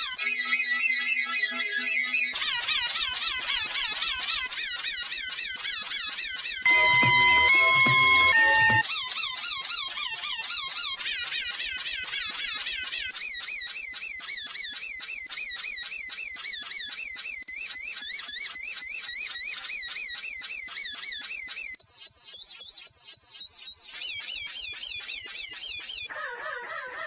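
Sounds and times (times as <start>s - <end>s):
shrill warbling tone: 6.7s - 10.9s.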